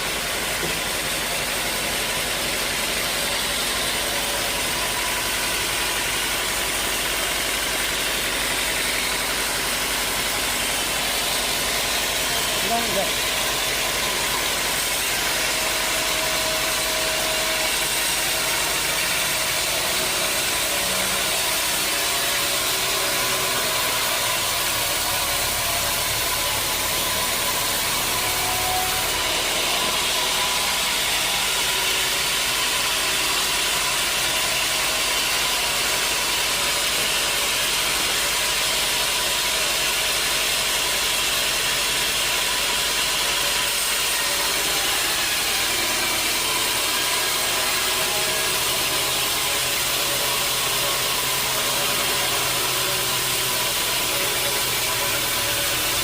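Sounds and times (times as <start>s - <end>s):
sawmill machinery running: 0.0s - 56.0s.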